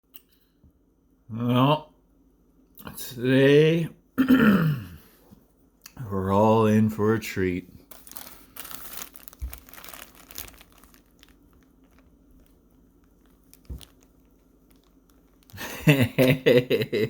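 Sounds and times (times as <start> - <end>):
crinkling and rustling handling noise: 7.8 - 16.1.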